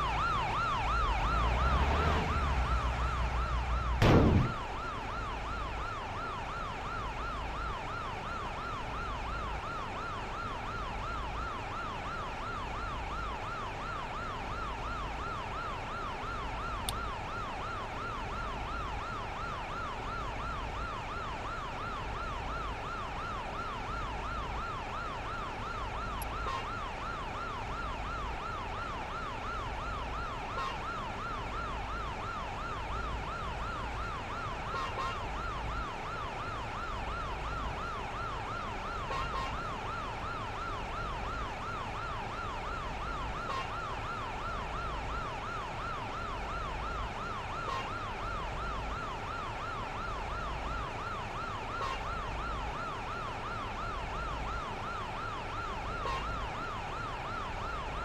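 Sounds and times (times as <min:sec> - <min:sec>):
electronic siren warbling: 0:00.0 - 0:04.7.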